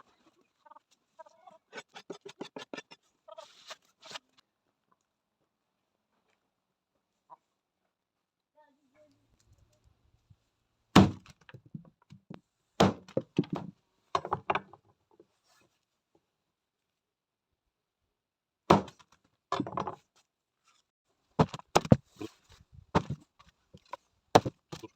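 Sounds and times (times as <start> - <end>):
sharp knocks and thuds: 11.0 - 11.8, 12.8 - 14.7, 18.7 - 20.0, 21.4 - 24.9.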